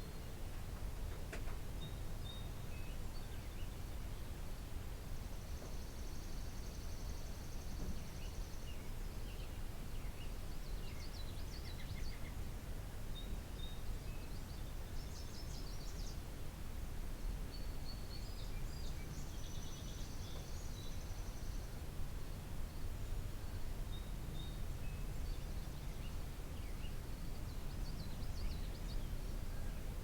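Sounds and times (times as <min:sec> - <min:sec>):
songbirds singing and chirping: 0:23.9 - 0:30.0.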